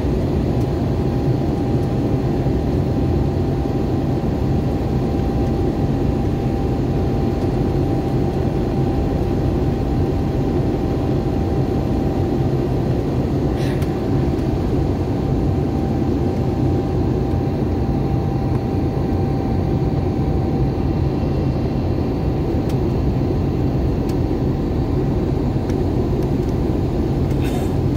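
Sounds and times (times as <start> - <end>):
airliner cabin engine rumble: 0.0 - 27.9.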